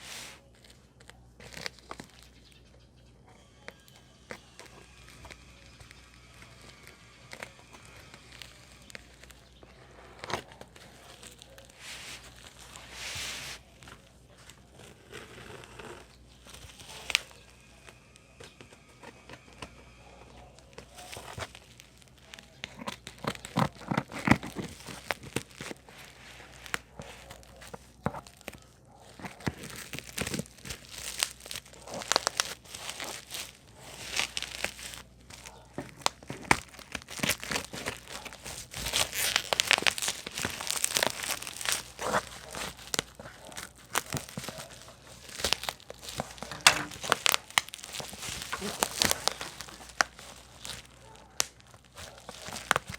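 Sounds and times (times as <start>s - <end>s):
packaging crinkling and tearing: 0.0s - 52.9s.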